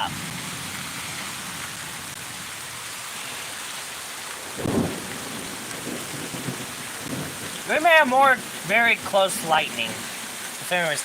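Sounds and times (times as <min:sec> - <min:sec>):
rain hissing: 0:00.0 - 0:11.0
thunder crack: 0:04.6 - 0:09.8.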